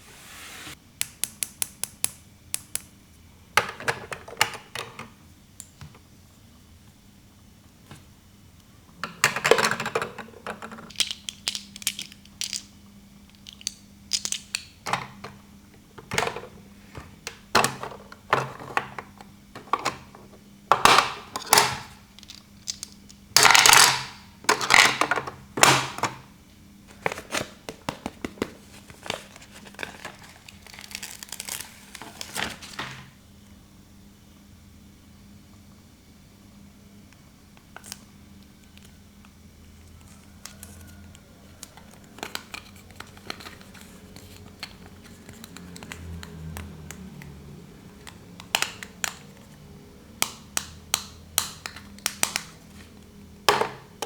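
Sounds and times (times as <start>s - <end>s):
faint steady hum: 0.0s - 54.0s
plastic toy pieces clattering: 9.2s - 12.7s, 13.3s - 15.4s, 20.7s - 26.1s.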